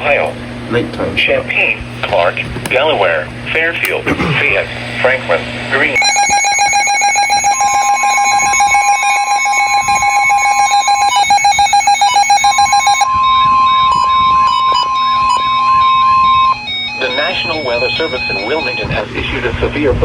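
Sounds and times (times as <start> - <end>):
fast buzzy beeping: 6.0 - 19.2
steady high alert tone: 6.0 - 19.2.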